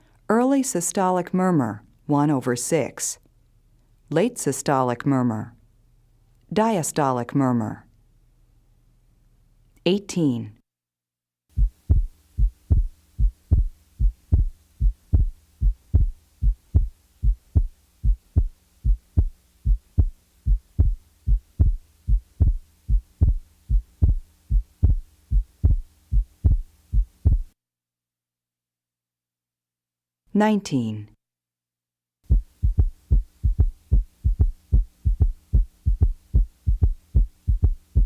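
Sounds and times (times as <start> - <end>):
faint steady hum: 11.5 - 27.6, 32.3 - 38.0
heartbeat dull beats: 11.5 - 27.6, 32.3 - 38.0.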